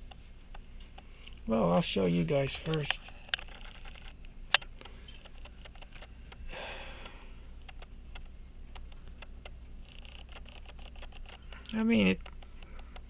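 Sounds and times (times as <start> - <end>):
clicks of watch parts handled: 2.6 - 6.4.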